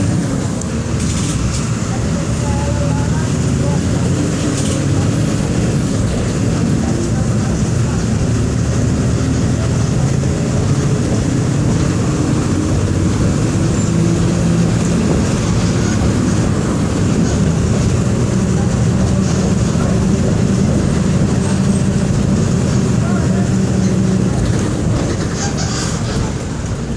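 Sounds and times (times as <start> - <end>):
bus diesel engine droning: 0.0 - 26.9.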